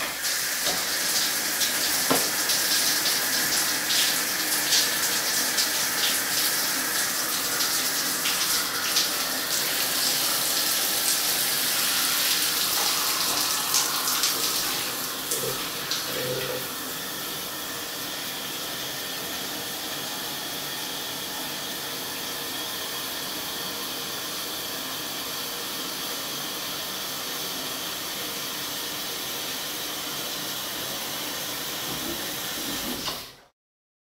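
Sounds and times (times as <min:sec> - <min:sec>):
showerhead water spraying: 0:00.0 - 0:19.1.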